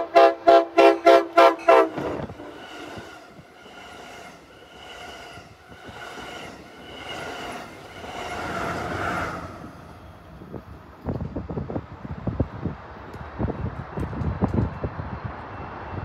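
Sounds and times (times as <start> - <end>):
train chime horn: 0.0 - 2.3
passing train: 0.0 - 16.0
wind gusts on microphone: 1.8 - 16.0.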